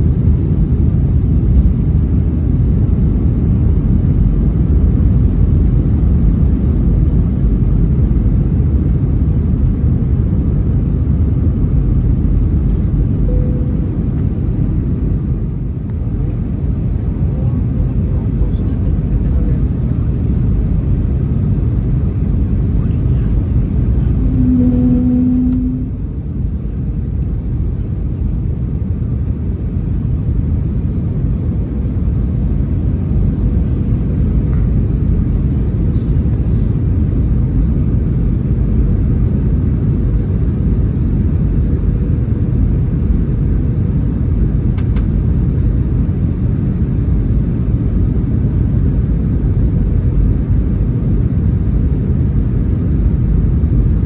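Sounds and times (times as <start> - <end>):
airplane cabin engine rumble: 0.0 - 54.0
short tone: 13.2 - 14.4, 24.0 - 26.2.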